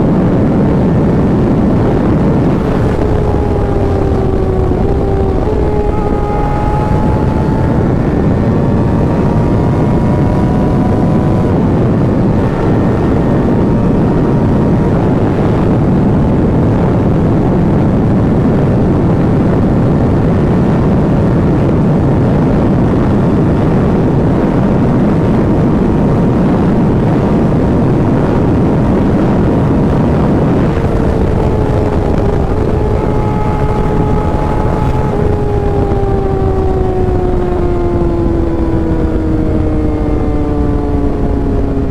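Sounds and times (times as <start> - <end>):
loud steady rush: 0.0 - 41.9.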